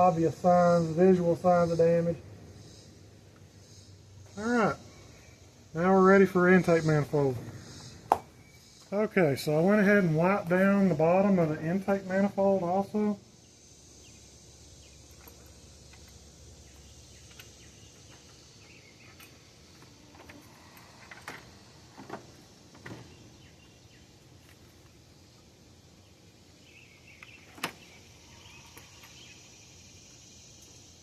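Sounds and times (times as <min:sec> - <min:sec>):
faint steady hiss: 0:00.0 - 0:31.0.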